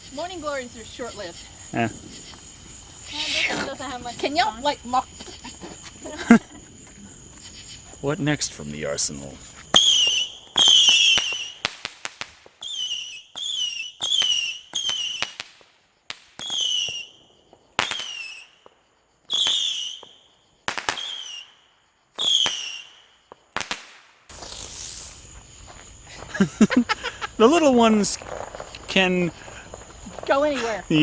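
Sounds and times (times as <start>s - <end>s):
firework whistles: 0.0s - 6.1s, 9.5s - 26.3s
firework pops: 1.8s - 4.4s, 9.6s - 21.6s, 22.2s - 25.5s, 28.1s - 30.9s.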